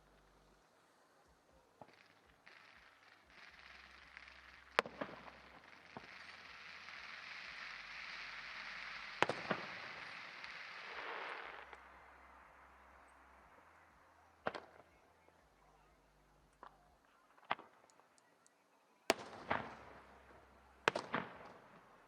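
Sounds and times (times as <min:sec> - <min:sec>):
crackling firework hiss: 0:00.0 - 0:15.5, 0:19.1 - 0:22.0
firework bangs: 0:01.7 - 0:13.7, 0:14.4 - 0:14.9, 0:19.1 - 0:22.0.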